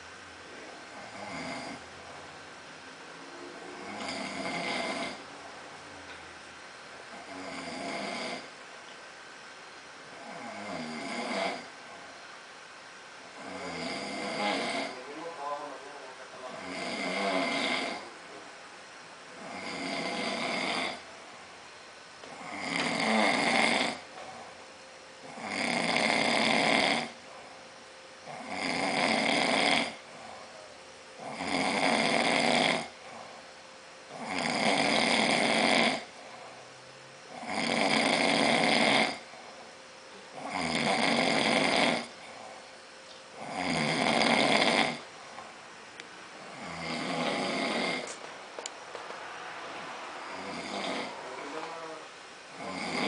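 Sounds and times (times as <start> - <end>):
man snoring loudly: 0.9 - 1.8, 3.6 - 5.3, 7.1 - 8.5, 10.1 - 11.7, 13.4 - 15.2, 16.4 - 18.1, 19.4 - 21.0, 22.3 - 24.0, 25.2 - 27.2, 28.2 - 30.3, 31.2 - 33.2, 34.1 - 36.1, 37.3 - 39.3, 40.4 - 42.4, 43.4 - 45.0, 46.4 - 48.2, 49.6 - 53.0.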